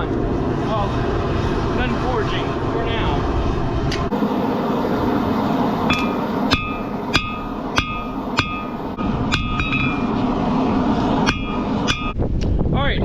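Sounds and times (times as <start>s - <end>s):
low rumble: 0.0s - 13.0s
hammer striking steel: 5.9s - 10.2s, 11.2s - 12.2s.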